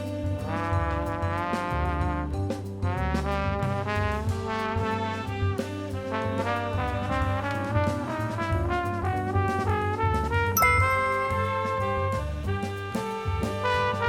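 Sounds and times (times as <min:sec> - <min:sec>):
backing band with bass and drums: 0:00.0 - 0:14.0
horn melody of held notes: 0:10.6 - 0:12.1.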